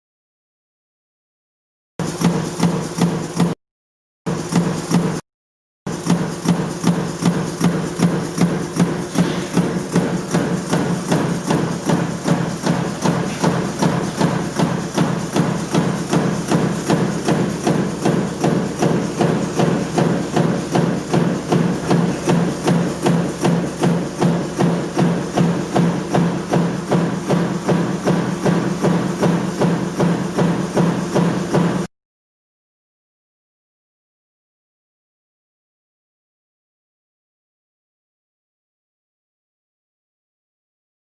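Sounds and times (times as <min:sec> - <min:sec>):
stamping press die striking: 0:05.9 - 0:31.9
steady low hum: 0:06.1 - 0:31.8.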